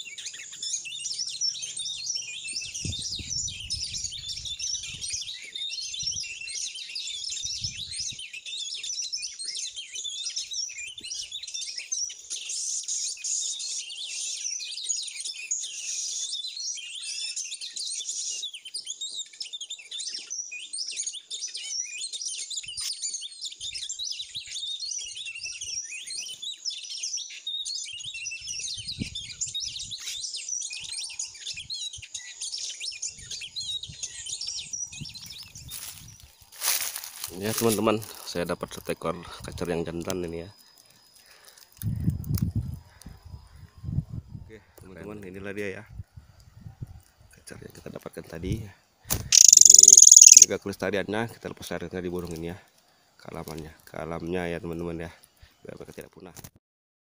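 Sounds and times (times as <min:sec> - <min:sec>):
songbird chirping and whistling: 0:00.0 - 0:38.1, 0:49.2 - 0:50.5.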